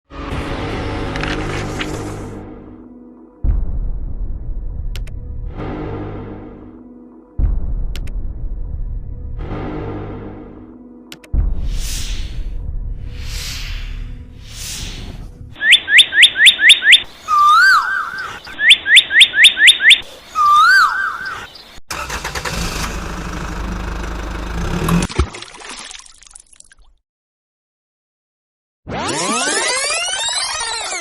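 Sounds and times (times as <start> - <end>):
quick rising electronic chirps: 14.6 - 21.5, 28.9 - 31.0
warbling electronic tone: 28.9 - 31.0.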